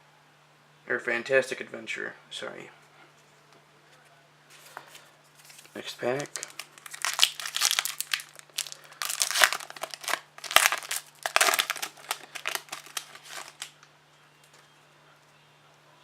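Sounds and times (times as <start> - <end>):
card pack wrapper tearing: 5.5 - 13.8.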